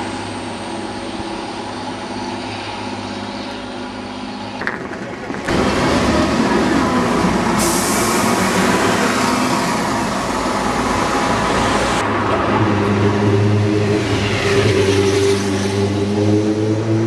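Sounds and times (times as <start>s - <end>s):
heavy vehicle engine running: 0.0s - 17.0s
air hiss: 7.6s - 8.8s.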